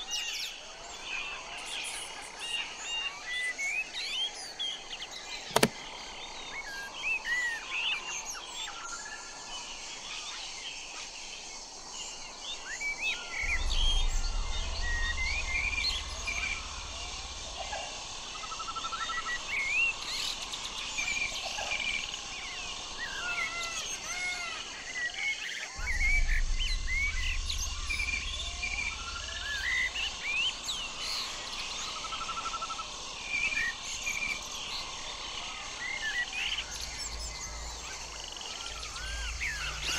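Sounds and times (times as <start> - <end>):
blackbird singing: 12.7 - 39.9
low rumble: 13.4 - 20.1, 25.8 - 33.4, 36.5 - 39.9
birds whistling and chirping: 35.8 - 39.9.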